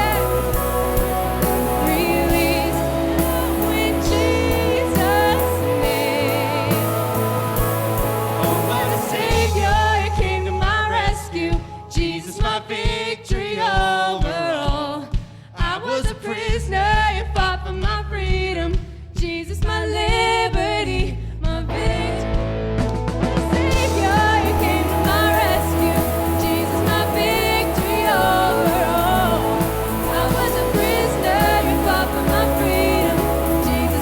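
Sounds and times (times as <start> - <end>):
sustained bass notes: 0.0 - 12.6, 19.7 - 34.0
person singing: 0.0 - 14.5, 23.4 - 34.0
steady drum beat: 0.0 - 17.6, 22.8 - 34.0.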